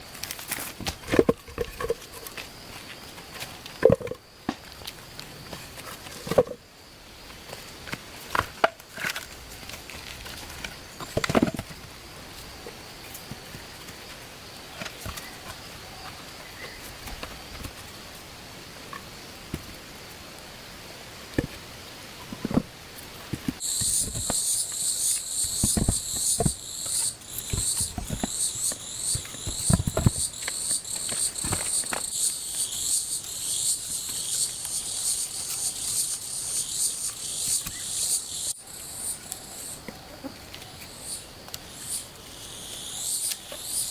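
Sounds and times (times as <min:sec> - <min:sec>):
insects chirping: 0:00.0 - 0:43.9
wood knocking and cracking: 0:03.8 - 0:04.7, 0:08.3 - 0:11.7.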